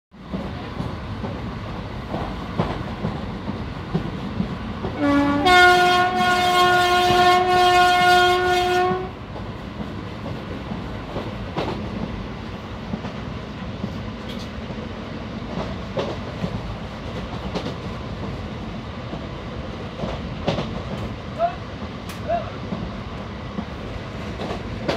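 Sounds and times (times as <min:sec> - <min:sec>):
train rumbling: 0:00.1 - 0:24.9
train horn: 0:04.9 - 0:09.2.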